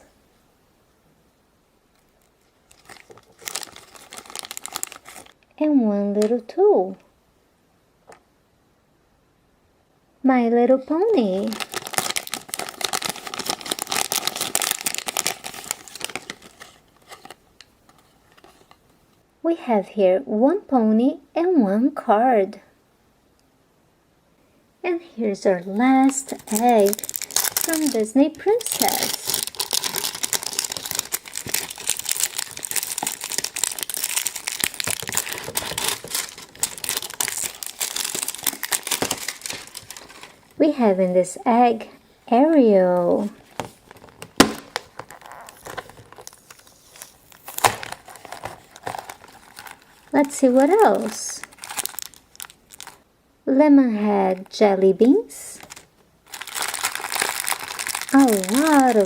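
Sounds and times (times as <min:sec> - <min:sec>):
packaging crinkling: 0:02.0 - 0:05.4, 0:11.2 - 0:18.9, 0:25.6 - 0:40.6, 0:43.1 - 0:53.0, 0:54.4 - 0:59.0.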